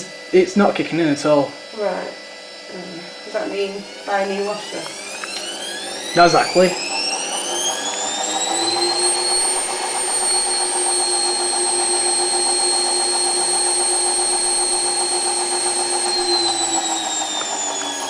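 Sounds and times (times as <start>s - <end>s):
washing machine motor whining: 0.0s - 18.0s.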